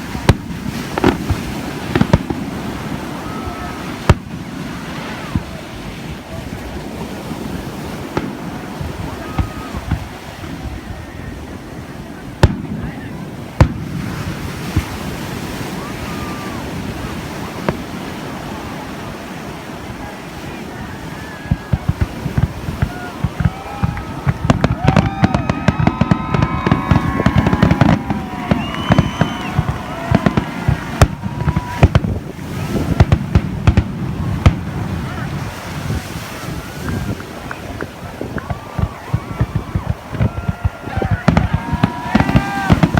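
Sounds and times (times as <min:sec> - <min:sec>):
firework bang: 0:00.0 - 0:03.1, 0:21.5 - 0:36.0, 0:38.3 - 0:42.9
ocean surf: 0:00.0 - 0:42.9
wind buffeting microphone: 0:00.0 - 0:42.9.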